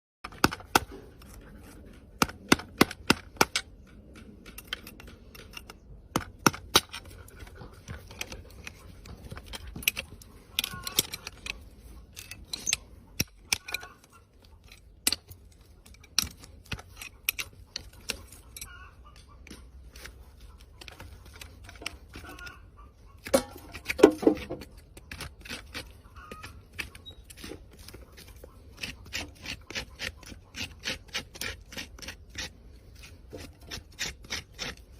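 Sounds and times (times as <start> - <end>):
hand tools clicking and snipping hoof: 0.2 - 34.9.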